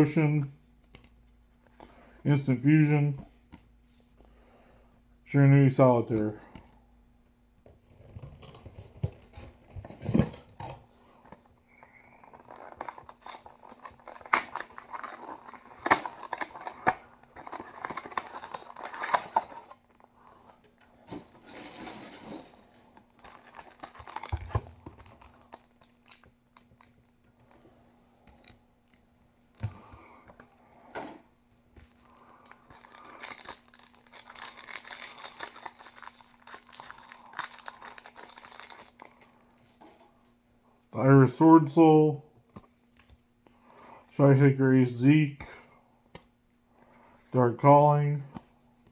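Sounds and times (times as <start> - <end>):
foil wrappers crinkling: 11.9 - 20.0, 21.6 - 27.1, 31.9 - 39.5.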